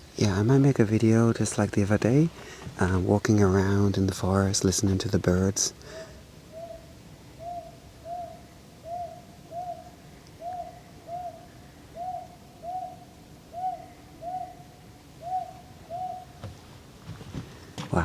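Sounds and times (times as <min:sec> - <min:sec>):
owl hooting: 0:05.9 - 0:16.5.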